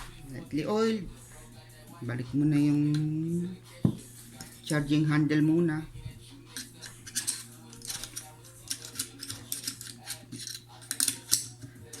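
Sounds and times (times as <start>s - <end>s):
sharp metal clicks and scrapes: 6.5s - 12.0s.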